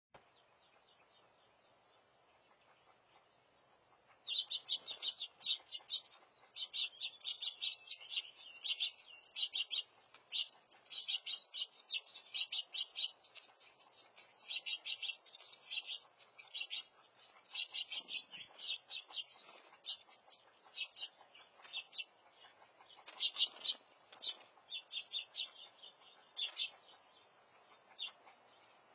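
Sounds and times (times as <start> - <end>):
young birds chirping: 0.2 - 28.9.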